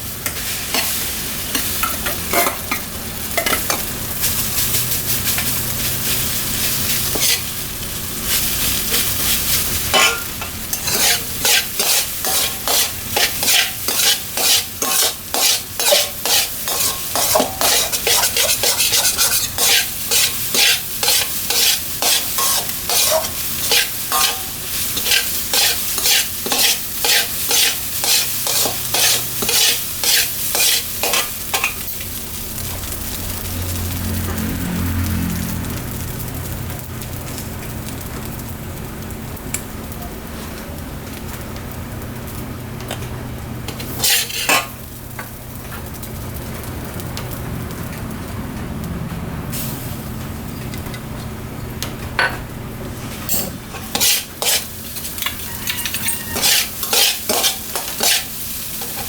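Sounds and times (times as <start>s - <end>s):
rice sizzling in a wok: 0.0s - 59.0s
metal spatula scraping wok: 0.2s - 4.4s, 5.2s - 7.6s, 8.2s - 31.8s, 43.7s - 44.8s, 53.2s - 59.0s.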